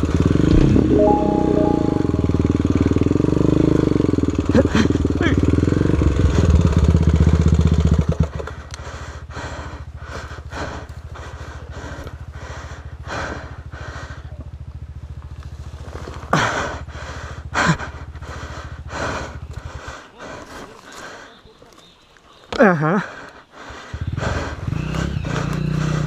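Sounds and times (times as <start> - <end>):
motorcycle engine idling: 4.9 - 19.8.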